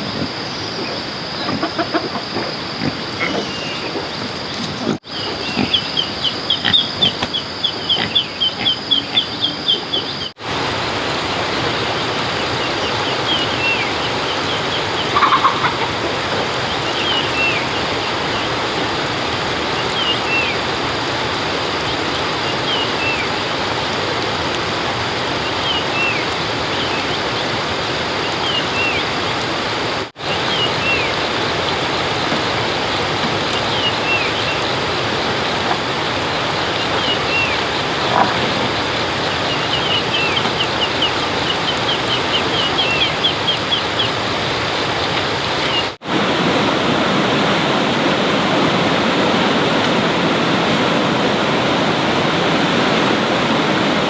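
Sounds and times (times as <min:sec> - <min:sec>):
small birds chirping: 0:00.0 - 0:10.4, 0:30.2 - 0:46.0.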